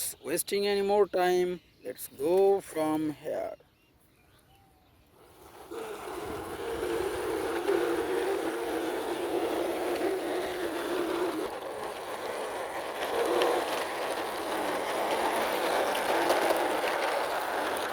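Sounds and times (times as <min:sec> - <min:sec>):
toy truck wheels rolling: 0:05.1 - 0:17.9.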